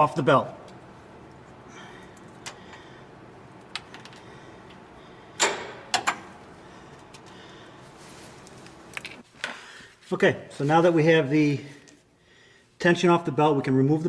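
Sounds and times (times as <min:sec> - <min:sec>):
metal clicks and clanks: 0:05.4 - 0:06.3.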